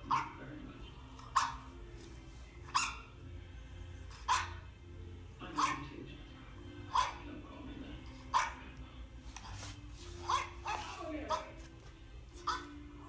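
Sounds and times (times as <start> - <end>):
dog barking: 0.0 - 0.4, 1.2 - 1.8, 2.7 - 3.2, 4.1 - 4.7, 5.5 - 6.0, 6.9 - 7.3, 8.3 - 8.7, 10.2 - 11.6, 12.4 - 12.8.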